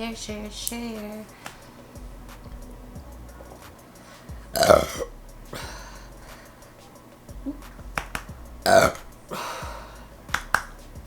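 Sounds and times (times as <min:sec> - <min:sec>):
breathy exhale: 0:03.9 - 0:04.6, 0:05.5 - 0:06.8, 0:08.8 - 0:10.2
woman burping: 0:04.5 - 0:05.7, 0:08.6 - 0:09.8.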